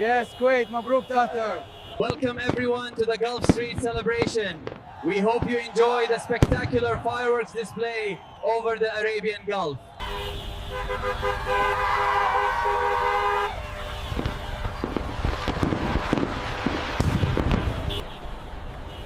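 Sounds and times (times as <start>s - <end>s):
car horns honking: 0.0s - 2.8s, 10.0s - 16.2s, 17.0s - 19.0s
fireworks popping and banging: 1.8s - 7.2s, 13.6s - 18.3s.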